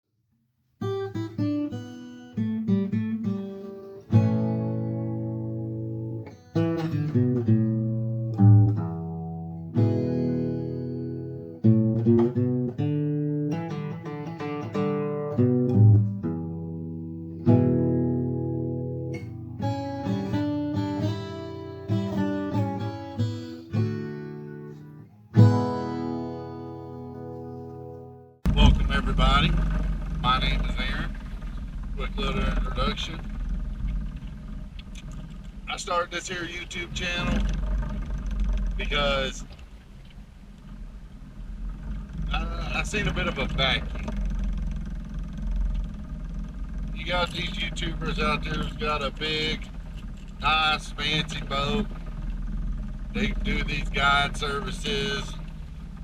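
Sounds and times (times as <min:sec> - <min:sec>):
acoustic guitar: 0:00.8 - 0:31.1, 0:41.7 - 0:56.0.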